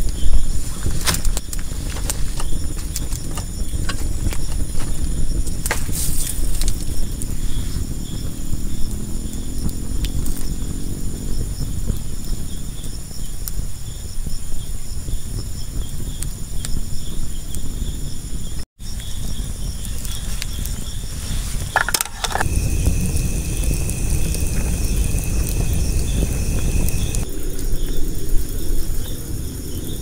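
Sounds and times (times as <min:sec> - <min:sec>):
insects chirring: 0:00.0 - 0:30.0
higher insect chirr: 0:01.3 - 0:30.0
low rumbling noise: 0:19.2 - 0:30.0
short clatter: 0:21.6 - 0:22.5.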